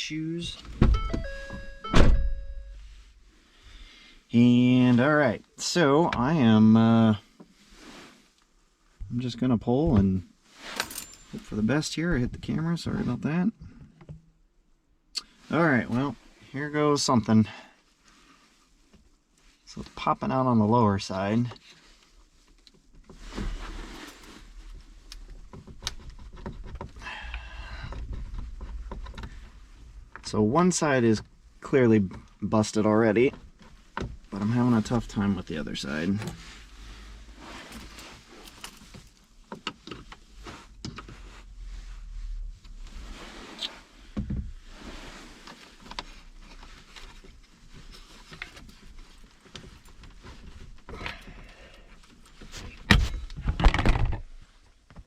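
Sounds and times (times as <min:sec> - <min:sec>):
plastic creaking and scraping: 0:52.1 - 0:54.3.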